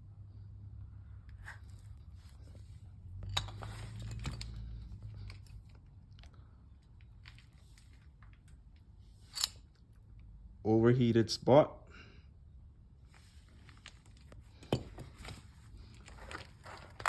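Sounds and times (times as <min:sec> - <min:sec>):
low steady hum: 0:00.0 - 0:17.0
handling clicks and crackles: 0:03.2 - 0:10.3, 0:13.5 - 0:17.0.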